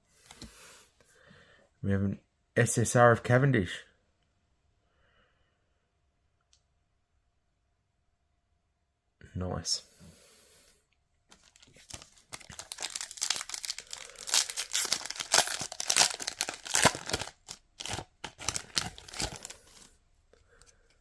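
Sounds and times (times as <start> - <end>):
wrapper crinkling and tearing: 11.3 - 20.0.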